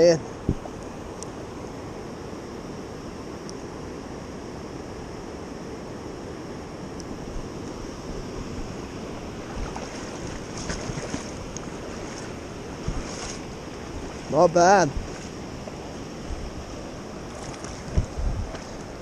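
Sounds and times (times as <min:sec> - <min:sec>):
creek water flowing: 0:06.8 - 0:19.0.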